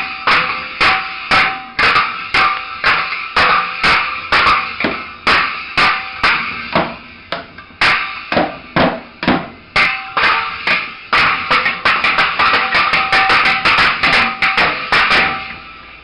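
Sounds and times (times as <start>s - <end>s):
child banging toy drums: 0.0s - 15.6s.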